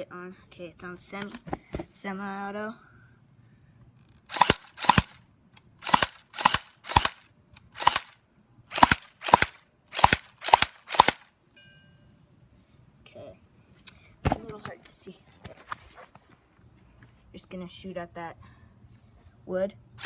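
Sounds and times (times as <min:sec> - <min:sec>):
airsoft pistol shots: 0:04.3 - 0:05.2, 0:05.8 - 0:07.2, 0:07.8 - 0:08.1, 0:08.7 - 0:11.2.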